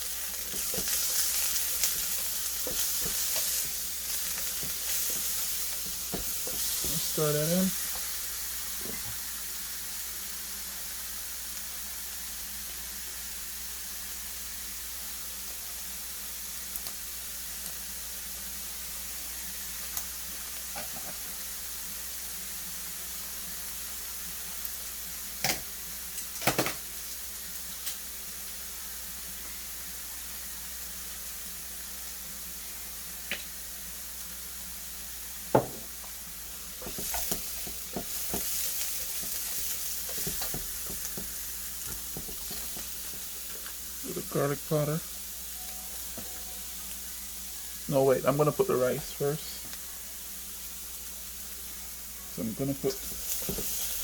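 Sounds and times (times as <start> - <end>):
vegetables sizzling in oil: 0.0 - 54.0
spatula knocking on pan: 4.5 - 7.1, 35.5 - 35.9, 36.8 - 42.8.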